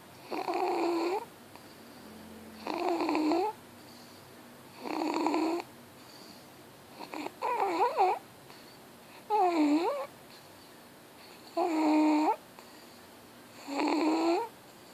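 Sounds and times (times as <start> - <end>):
wavering snores: 0.2 - 4.1, 4.7 - 6.4, 7.0 - 8.2, 9.2 - 10.1, 11.5 - 12.4, 13.6 - 14.5.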